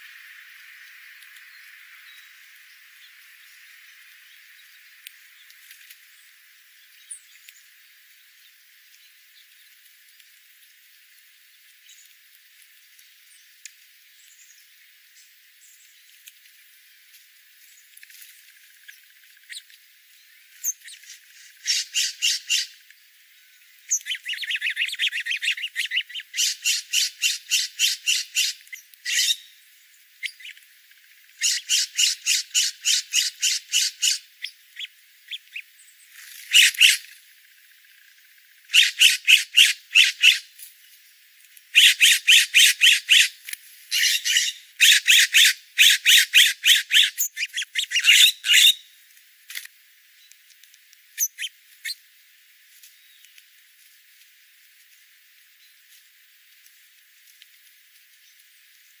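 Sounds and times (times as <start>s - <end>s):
birds calling: 18.7s - 30.7s, 31.4s - 37.2s, 38.7s - 40.5s, 41.8s - 48.9s.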